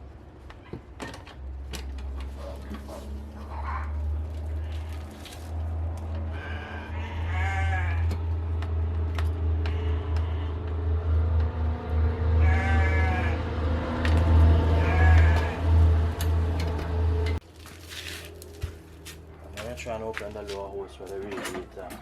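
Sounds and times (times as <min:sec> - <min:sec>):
drawn-out wavering cries: 0:03.4 - 0:17.2.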